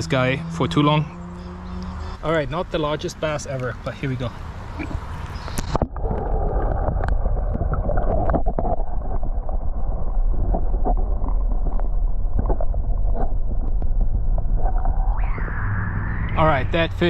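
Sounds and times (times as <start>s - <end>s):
muffled underwater water rumble: 2.6s - 17.0s.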